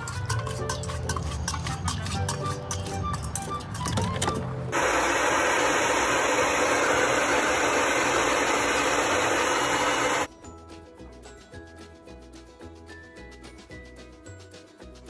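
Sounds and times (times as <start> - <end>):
background music: 0.0 - 4.8, 10.3 - 15.0
loud steady rushing noise: 4.8 - 10.3.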